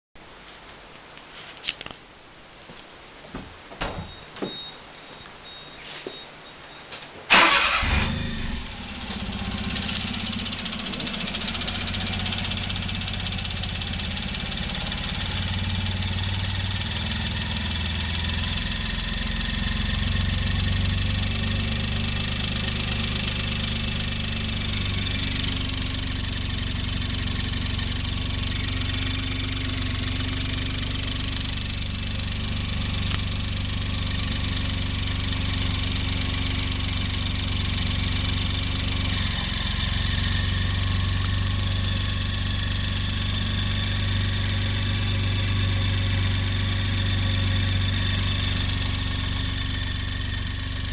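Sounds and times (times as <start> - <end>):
drive belt squealing: 7.3 - 17.3, 23.3 - 50.9
car engine starting and idling: 7.3 - 50.9.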